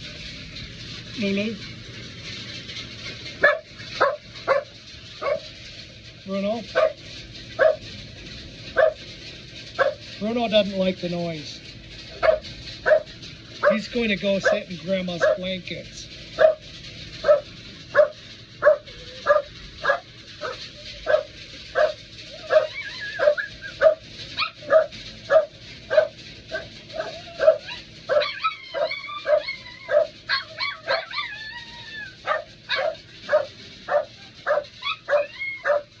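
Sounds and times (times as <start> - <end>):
dog barking: 3.4 - 5.4, 6.8 - 7.0, 7.6 - 7.8, 8.8 - 9.0, 12.2 - 13.8, 16.4 - 16.6, 17.2 - 17.4, 18.0 - 26.1, 27.0 - 31.1, 32.3 - 35.9
dog whining and yipping: 7.6 - 7.8, 12.2 - 13.8, 18.0 - 36.0.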